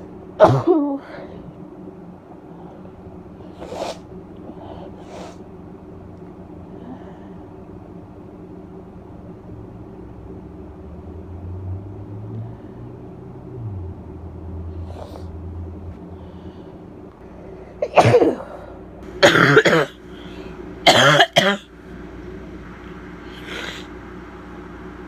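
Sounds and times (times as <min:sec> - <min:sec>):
low steady hum: 0:00.0 - 0:25.0
woman barking coughs: 0:00.4 - 0:01.0, 0:17.8 - 0:20.0, 0:20.8 - 0:21.7.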